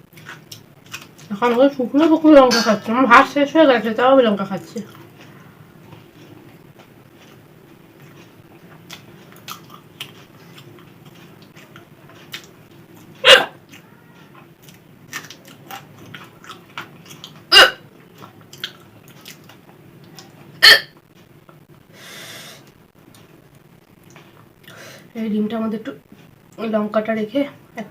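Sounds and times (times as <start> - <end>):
person hiccuping: 13.2 - 13.6, 17.5 - 17.9, 20.6 - 21.0
chewing clicks: 18.2 - 20.3.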